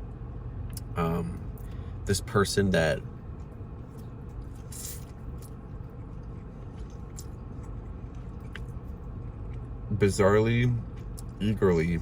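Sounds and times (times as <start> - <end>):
low background hum: 0.0 - 12.0
person chewing food: 5.2 - 9.8.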